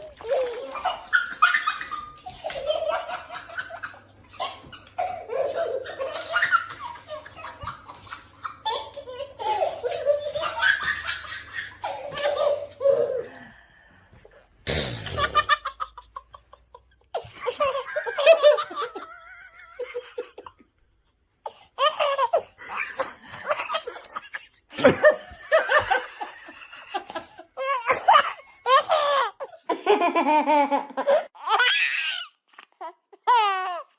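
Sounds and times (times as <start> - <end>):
baby laughing: 0.0 - 13.4, 15.2 - 19.1, 21.5 - 26.1.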